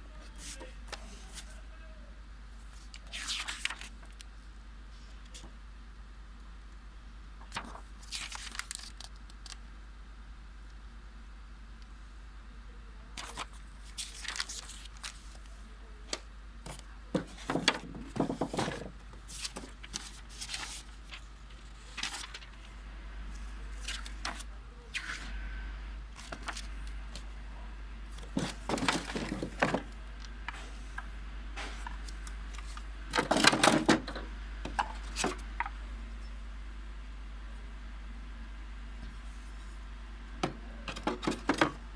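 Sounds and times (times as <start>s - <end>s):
packaging rustling and clicking: 28.2s - 30.3s.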